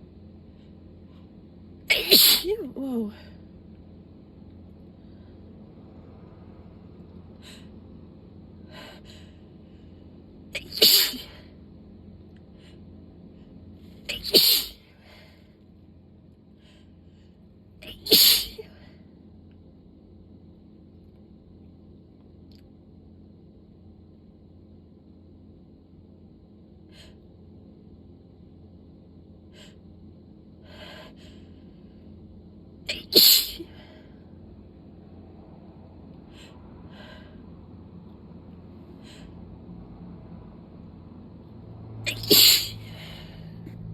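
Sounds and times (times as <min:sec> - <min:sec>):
person sneezing: 0:01.9 - 0:02.8, 0:10.6 - 0:11.5, 0:14.1 - 0:14.8, 0:17.9 - 0:18.7, 0:32.9 - 0:33.8, 0:42.1 - 0:43.2.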